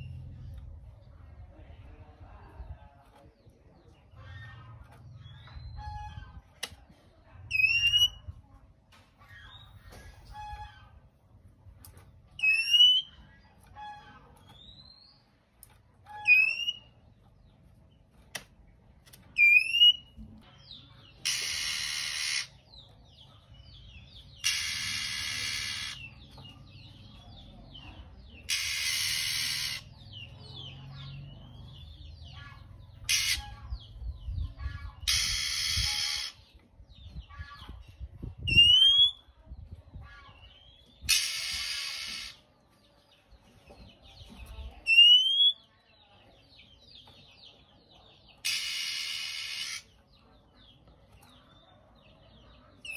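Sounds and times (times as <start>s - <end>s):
bird whistles and chirps: 7.5s - 8.2s, 12.4s - 13.2s, 16.1s - 17.0s, 19.4s - 20.1s, 21.2s - 22.6s, 28.5s - 30.0s, 35.0s - 36.5s, 38.4s - 39.2s, 44.8s - 45.6s, 48.4s - 49.9s.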